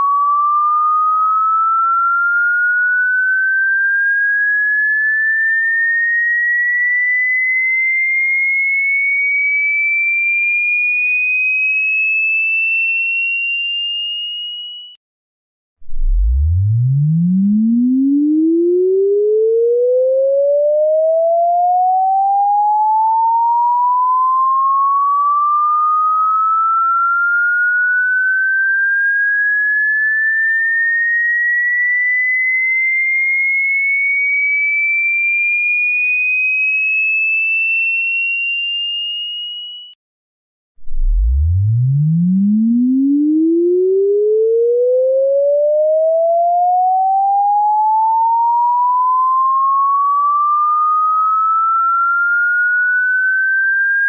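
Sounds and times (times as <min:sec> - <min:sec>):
sine tone sweeping upward: 0:00.0 - 0:09.3, 0:15.8 - 0:34.6, 0:40.8 - 0:54.0.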